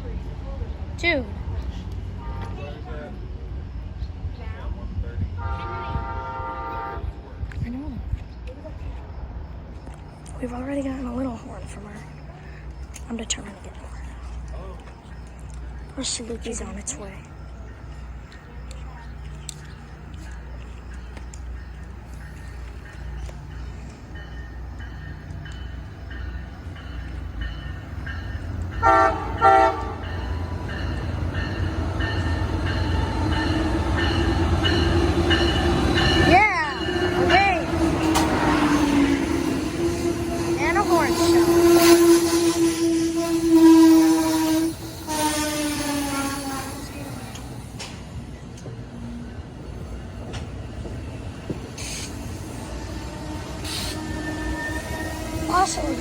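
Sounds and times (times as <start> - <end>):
low rumble of arriving train: 0.0 - 56.0
locomotive horn blasts: 2.2 - 2.6, 5.4 - 7.1, 28.8 - 30.5, 37.0 - 47.3.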